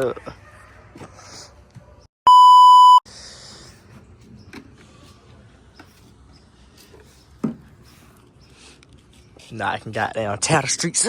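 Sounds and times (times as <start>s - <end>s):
electronic bleep tone: 2.3s - 3.0s.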